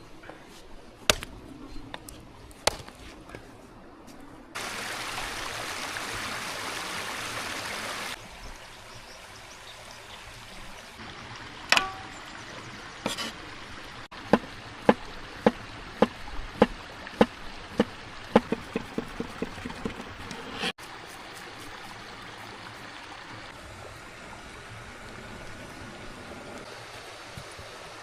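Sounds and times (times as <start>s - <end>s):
blade chopping on a board: 1.1s - 1.3s, 2.7s - 2.9s, 16.0s - 20.0s
water pouring: 11.0s - 23.5s.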